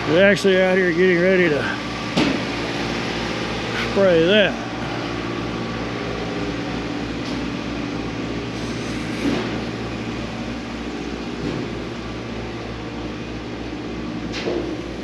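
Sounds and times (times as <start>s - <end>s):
engine running steadily: 0.0s - 15.0s.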